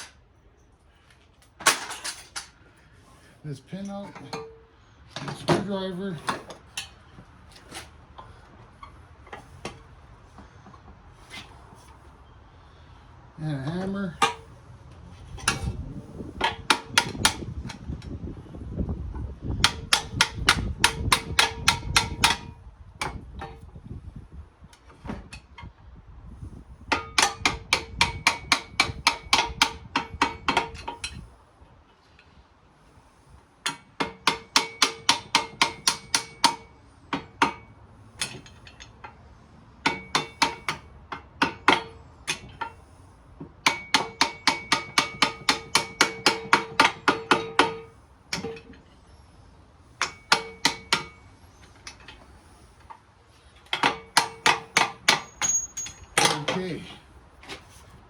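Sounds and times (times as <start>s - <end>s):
hammer striking metal punch: 16.4s - 17.5s, 19.6s - 23.2s, 26.9s - 30.8s, 33.7s - 37.6s, 39.8s - 42.5s, 43.6s - 48.6s, 50.0s - 51.2s, 53.8s - 56.6s.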